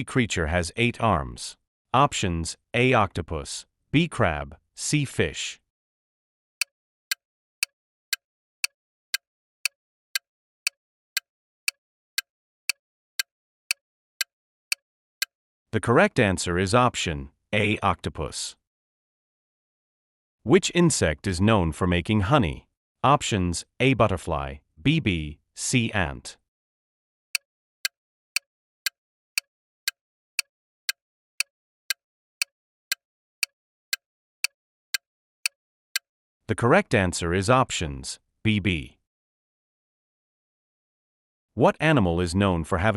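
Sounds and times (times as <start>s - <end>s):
clock-like timer ticks: 6.6s - 15.3s, 27.8s - 36.1s.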